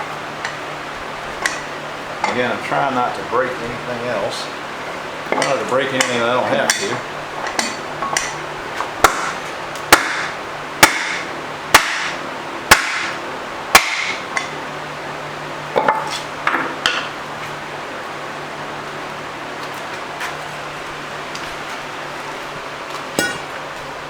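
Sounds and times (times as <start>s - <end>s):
hammer striking metal: 9.0s - 13.2s, 13.8s - 14.5s, 23.2s - 23.5s.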